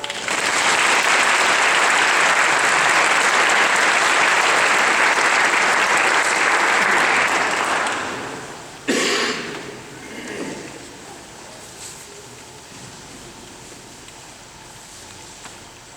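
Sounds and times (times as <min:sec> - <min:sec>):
audience applauding: 0:00.0 - 0:09.9.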